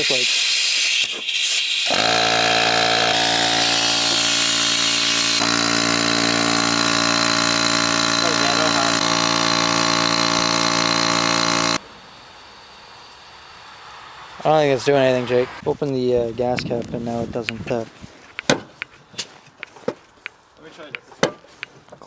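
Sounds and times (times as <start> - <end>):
machine motor droning: 1.9 - 14.4.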